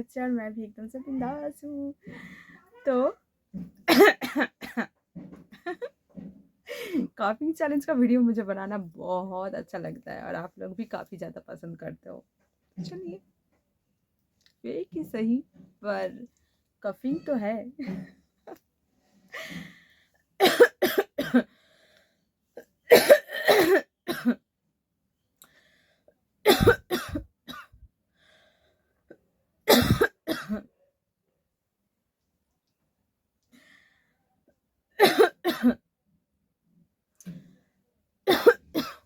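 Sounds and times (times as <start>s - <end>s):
person coughing: 3.9s - 4.9s, 20.4s - 21.5s, 22.9s - 24.4s, 26.5s - 27.7s, 29.7s - 30.6s, 35.0s - 35.8s, 38.3s - 39.0s.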